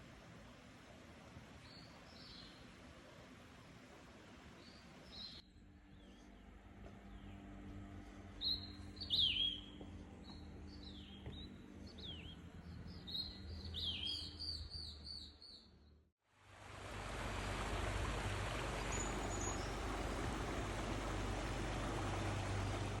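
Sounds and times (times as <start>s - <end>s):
wild birds chirping: 8.3s - 15.9s, 18.8s - 21.0s.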